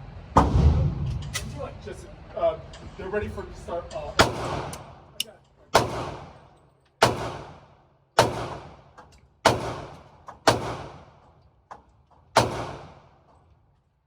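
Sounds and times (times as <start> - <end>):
gunshots echoing: 4.2 - 5.1, 5.7 - 11.3, 12.4 - 13.2.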